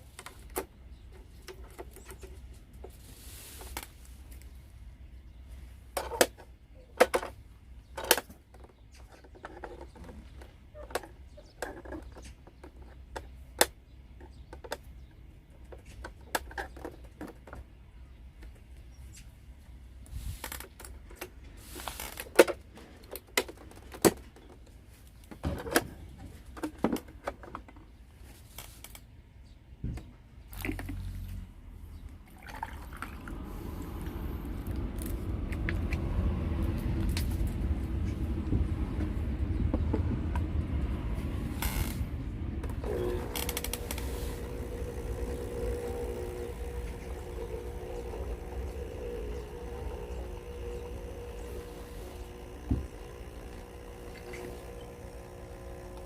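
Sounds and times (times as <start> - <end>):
steady low hum: 30.2 - 56.0.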